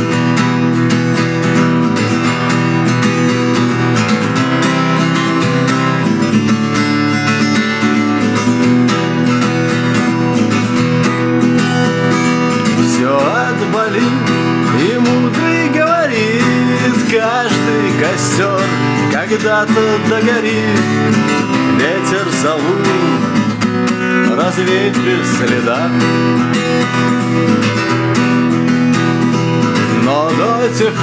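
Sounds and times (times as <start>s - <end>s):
acoustic guitar strumming: 0.0s - 31.0s
person singing: 12.5s - 26.5s, 29.6s - 31.0s.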